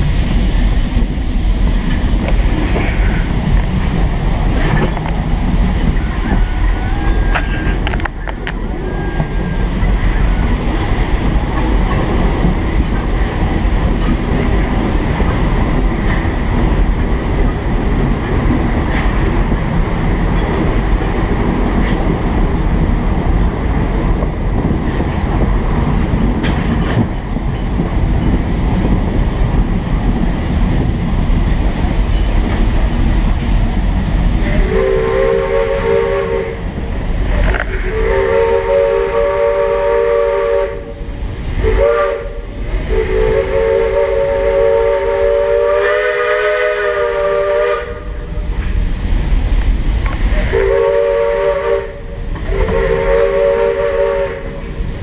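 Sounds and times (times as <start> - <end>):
steam train rumble and clatter: 0.0 - 55.0
steam whistle blowing: 34.4 - 36.6, 37.4 - 41.0, 41.6 - 48.3, 50.3 - 54.7.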